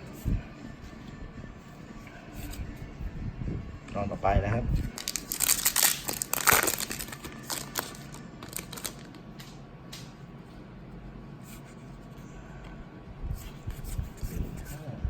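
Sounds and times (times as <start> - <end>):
trading cards being handled: 4.9 - 10.1.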